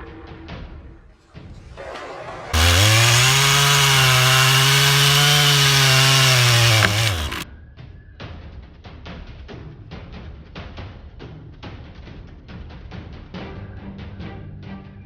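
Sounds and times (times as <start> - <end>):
chainsaw engine revving: 2.6 - 7.4.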